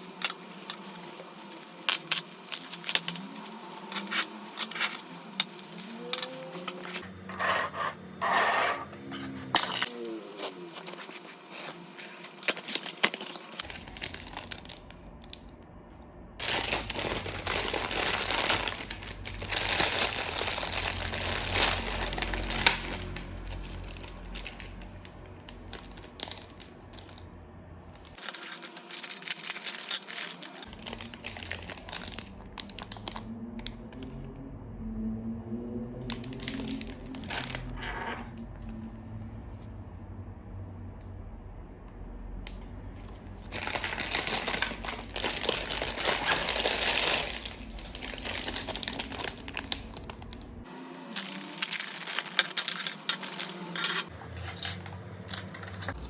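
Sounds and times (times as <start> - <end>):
plastic packaging crinkling: 0.0 - 7.6, 9.5 - 15.5, 16.4 - 27.2, 27.9 - 33.3, 36.1 - 37.8, 43.0 - 56.0
small items clicking: 1.8 - 7.6, 36.1 - 37.7, 51.2 - 56.0.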